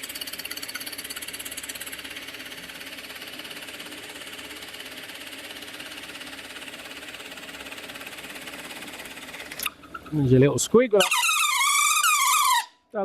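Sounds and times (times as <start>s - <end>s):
pillar drill boring through wood: 11.0s - 12.7s.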